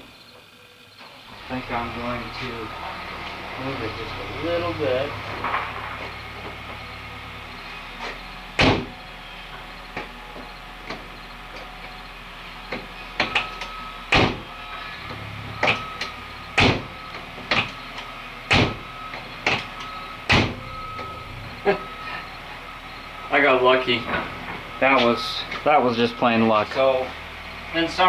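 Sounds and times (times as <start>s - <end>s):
sharp metal knocks on car door: 8.6s - 9.0s, 12.7s - 14.5s, 16.6s - 17.8s, 18.5s - 18.8s, 20.3s - 20.6s.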